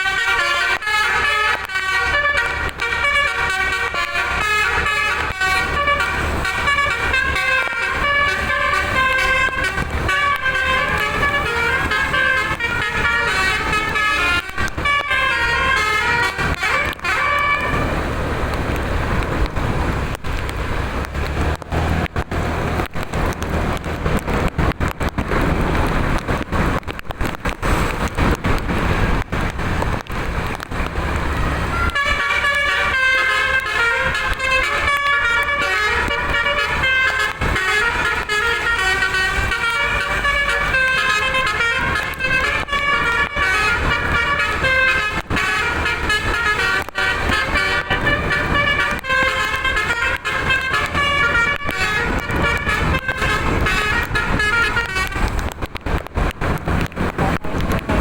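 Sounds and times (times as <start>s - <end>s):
bus horn playing fast tune: 0.0s - 18.2s, 31.4s - 55.4s
noisy rumble with crackling: 0.0s - 58.0s.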